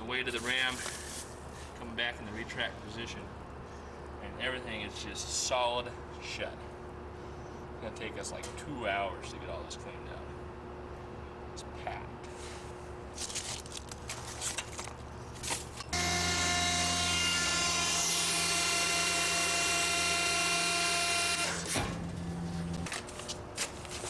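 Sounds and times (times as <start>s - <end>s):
power tool whining: 15.7s - 22.9s.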